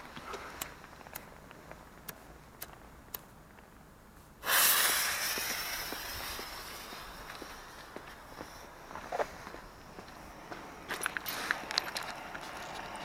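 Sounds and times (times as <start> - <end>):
firework fountain hissing sparks: 4.4 - 8.0.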